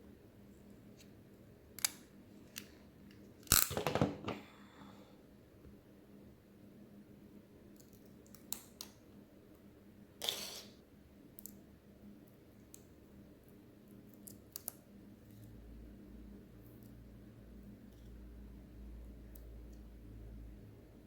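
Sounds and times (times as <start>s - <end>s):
brief scrape: 10.2s - 10.8s
small sharp clicks: 14.1s - 14.8s.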